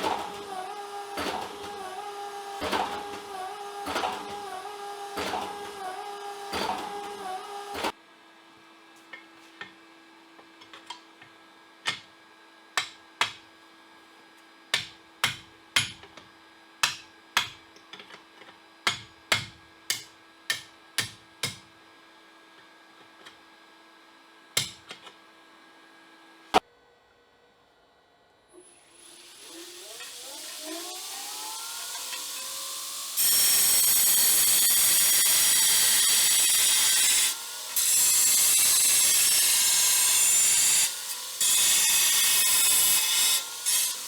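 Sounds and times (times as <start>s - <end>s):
hammer striking steel: 18.9s - 21.6s.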